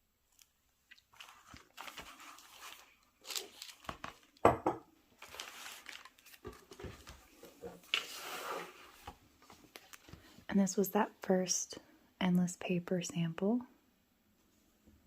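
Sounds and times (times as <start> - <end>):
paper rustling and crinkling: 0.4 - 4.4, 5.1 - 10.5.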